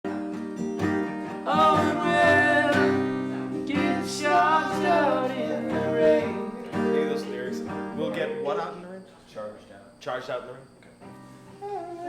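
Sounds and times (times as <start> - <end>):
acoustic guitar strumming: 0.1 - 9.1, 10.9 - 12.0
wavering melody line: 1.5 - 9.0.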